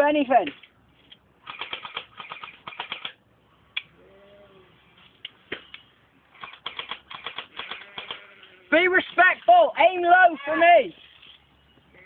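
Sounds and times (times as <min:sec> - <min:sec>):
airsoft guns firing: 0:01.4 - 0:03.1.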